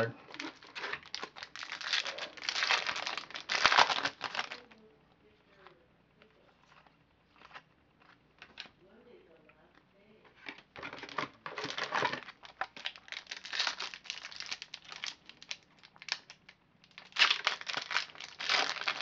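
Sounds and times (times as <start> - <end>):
foil wrapper crinkling: 0.0 - 4.8, 10.8 - 19.0.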